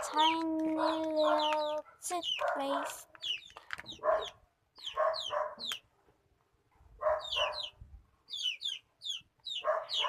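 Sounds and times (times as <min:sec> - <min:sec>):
high falling bird chirps: 0:07.0 - 0:10.0.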